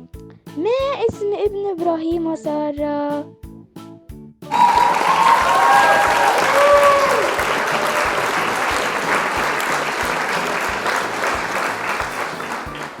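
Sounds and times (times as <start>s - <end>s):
crowd clapping: 4.5s - 13.0s.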